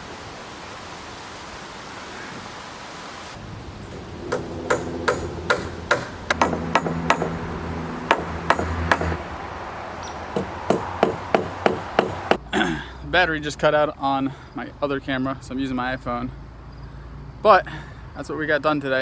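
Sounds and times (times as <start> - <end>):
low hum: 3.4 - 9.8
hammer striking nails into wood: 3.9 - 9.2, 10.3 - 12.4.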